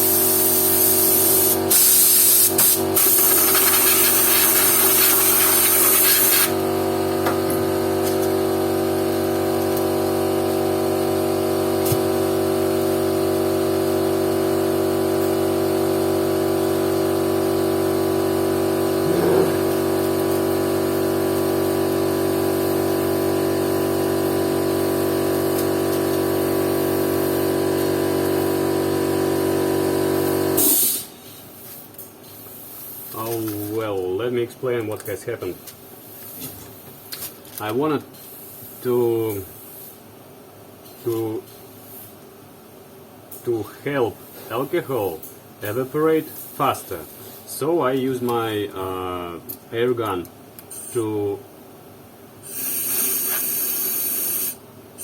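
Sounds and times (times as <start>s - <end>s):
air blow gun hissing: 0.0s - 6.6s, 52.4s - 54.6s
air compressor humming: 0.0s - 31.1s.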